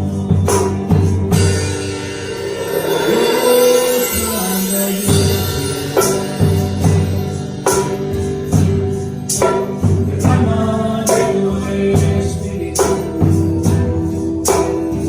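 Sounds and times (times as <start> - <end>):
band playing praise song: 0.0 - 15.0
tambourine: 0.0 - 15.0
person singing: 2.6 - 7.9, 9.8 - 15.0.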